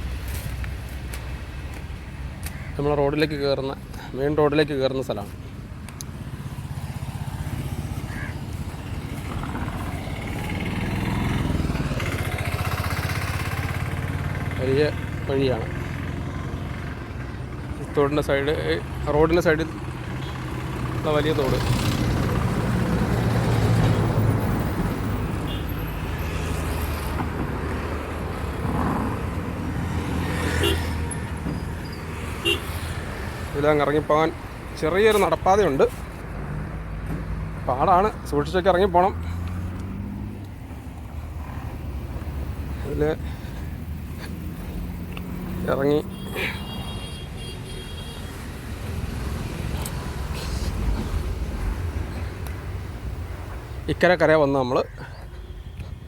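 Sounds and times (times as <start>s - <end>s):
motor vehicles passing: 0.0s - 56.0s
motorcycle engine running: 9.1s - 15.3s.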